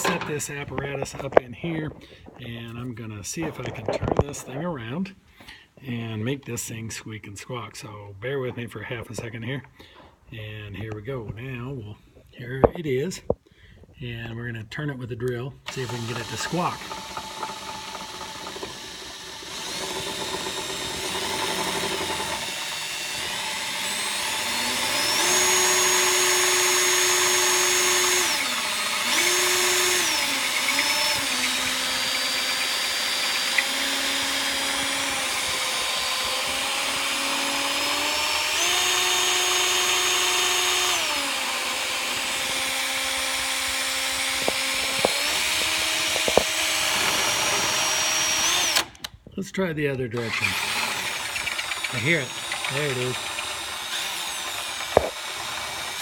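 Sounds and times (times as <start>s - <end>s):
electric drill motor whine: 15.7s - 49.1s, 50.2s - 56.0s.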